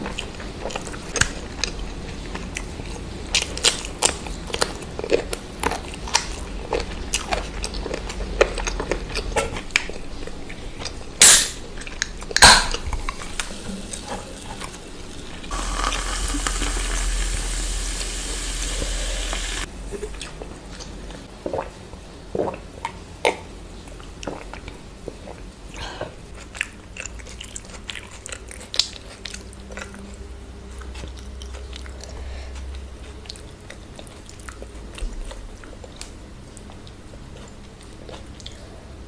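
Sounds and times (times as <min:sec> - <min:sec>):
chewing: 0:00.0 - 0:11.1, 0:19.3 - 0:39.0
steady hiss: 0:13.1 - 0:19.7.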